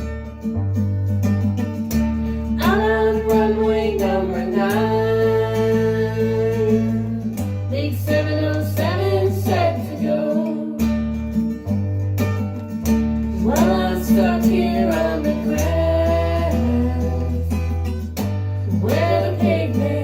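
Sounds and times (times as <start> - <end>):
bass notes: 0.0 - 20.0
strummed acoustic guitar: 0.0 - 20.0
person singing: 2.6 - 10.9, 13.4 - 17.8, 18.8 - 20.0.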